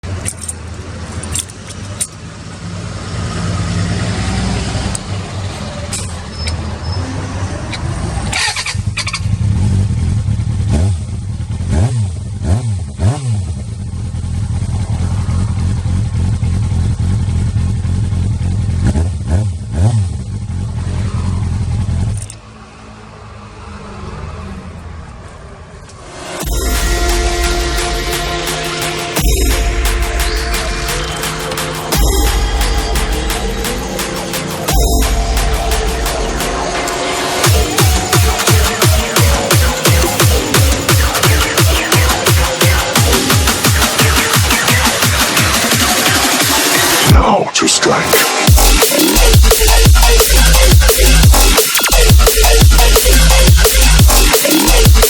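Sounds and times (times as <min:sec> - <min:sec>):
motorcycle engine revving: 0:00.0 - 0:23.3.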